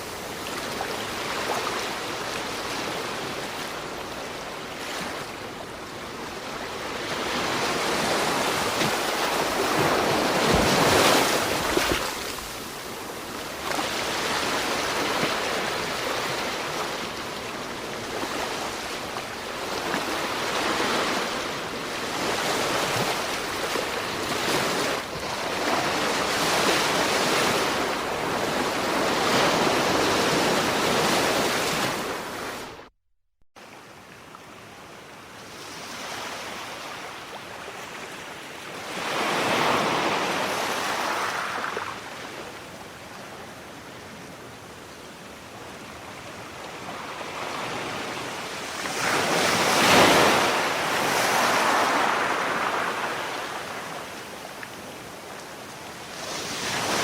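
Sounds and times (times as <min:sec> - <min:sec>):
sea waves breaking on shore: 0:00.0 - 0:32.9, 0:33.6 - 0:57.0.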